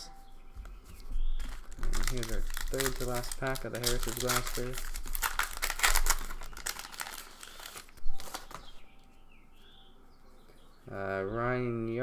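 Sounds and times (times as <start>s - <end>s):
sharp wrapper crackle: 1.0s - 8.8s
card pack wrapper tearing: 1.4s - 8.8s.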